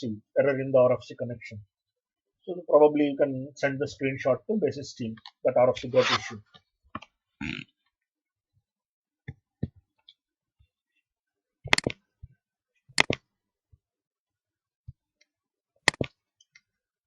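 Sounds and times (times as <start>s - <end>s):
computer mouse or keyboard clicks: 11.6s - 12.0s, 13.0s - 13.2s, 15.8s - 16.6s.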